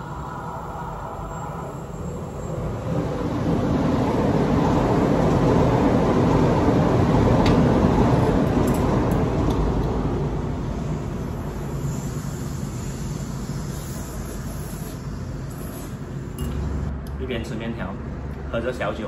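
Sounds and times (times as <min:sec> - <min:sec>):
passing train rumbling: 0:00.0 - 0:13.4.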